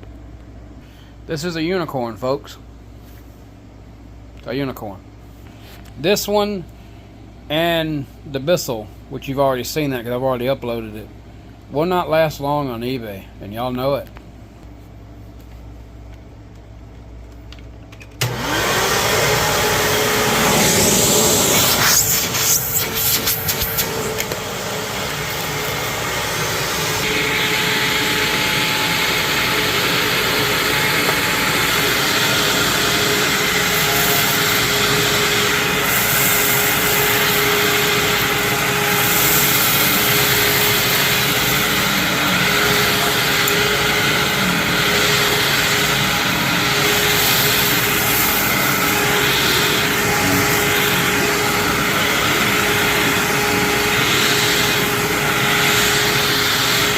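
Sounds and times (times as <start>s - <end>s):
vacuum cleaner running: 18.2s - 56.9s.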